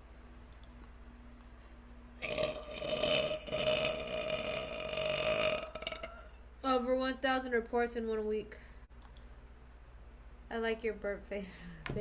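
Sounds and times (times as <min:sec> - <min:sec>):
woman burping: 0:02.2 - 0:06.4.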